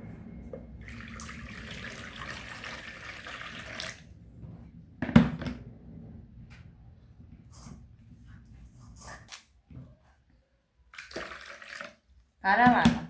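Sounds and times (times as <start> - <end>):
water running from tap: 0.8 - 4.1, 11.0 - 12.1.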